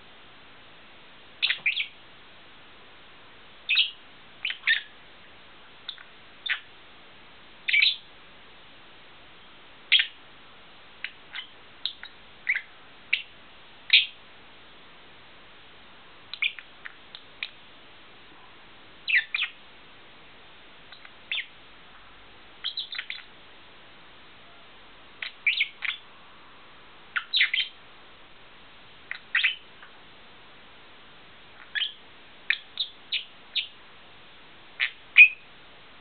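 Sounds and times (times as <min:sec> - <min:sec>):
lovebird chirping: 0:01.4 - 0:02.0, 0:03.7 - 0:05.0, 0:05.8 - 0:06.7, 0:07.6 - 0:08.1, 0:09.4 - 0:10.2, 0:11.0 - 0:14.2, 0:16.3 - 0:17.6, 0:19.0 - 0:19.6, 0:20.9 - 0:21.6, 0:22.6 - 0:23.3, 0:24.4 - 0:26.2, 0:27.1 - 0:27.8, 0:29.1 - 0:30.0, 0:31.5 - 0:33.8, 0:34.8 - 0:35.5.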